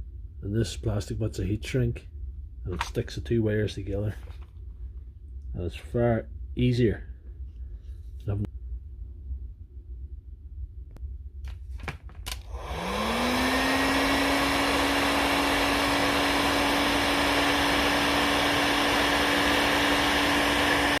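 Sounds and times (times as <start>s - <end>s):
heat gun fan blowing air: 12.2s - 21.0s.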